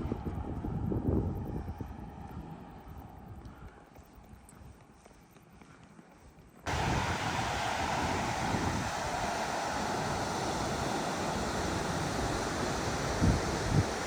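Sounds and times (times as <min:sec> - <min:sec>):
wind on microphone: 0:00.0 - 0:03.7, 0:06.7 - 0:14.0
rushing water roar: 0:06.7 - 0:14.0.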